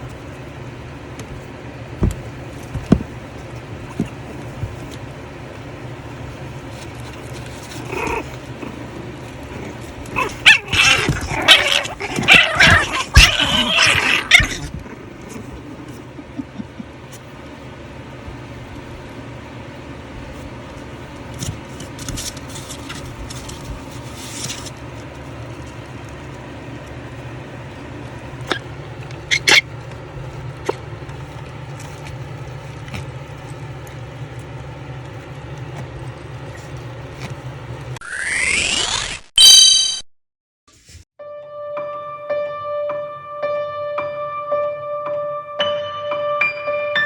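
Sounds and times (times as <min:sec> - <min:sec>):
puppies yapping: 0:07.6 - 0:17.0, 0:28.3 - 0:30.0.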